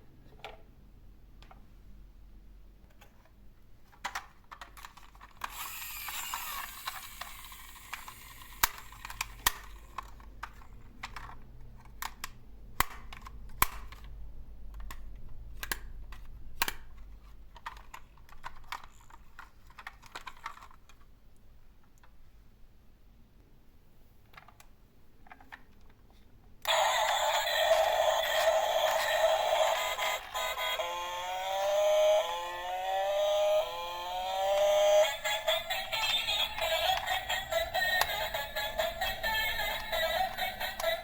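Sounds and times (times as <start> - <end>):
toy cars clicking and knocking: 3.9 - 14.2, 14.8 - 21.0, 26.7 - 33.4, 34.0 - 41.0
toy cars rolling: 4.1 - 11.4, 26.7 - 41.0.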